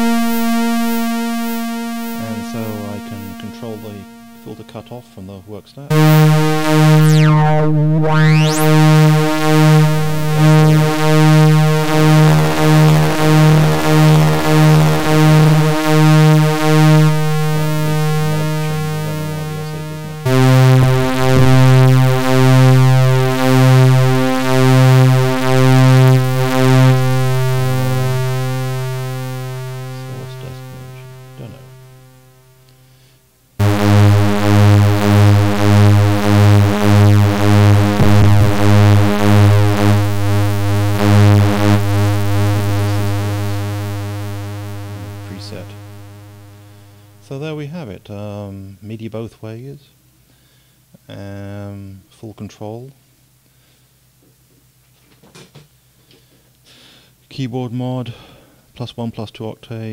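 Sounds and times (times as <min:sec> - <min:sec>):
pulsing buzzy synth bass: 0:00.0 - 0:47.7.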